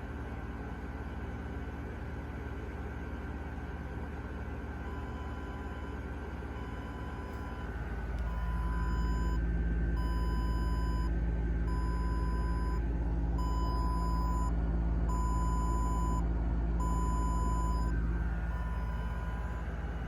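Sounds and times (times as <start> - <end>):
low hum: 4.8 - 20.0.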